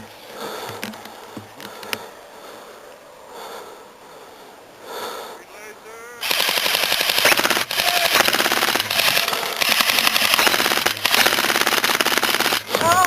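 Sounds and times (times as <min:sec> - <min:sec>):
airsoft guns firing: 0:06.2 - 0:13.0.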